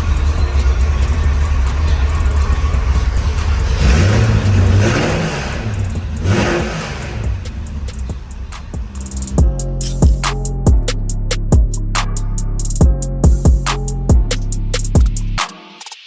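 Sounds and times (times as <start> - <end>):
car engine running and revving: 0.0 - 11.8.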